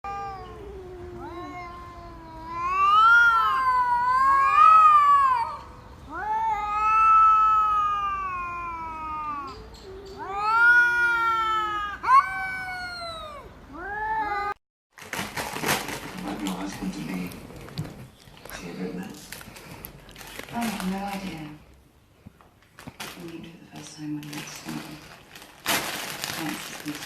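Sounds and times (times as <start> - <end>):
animal yowling: 0.1 - 14.6.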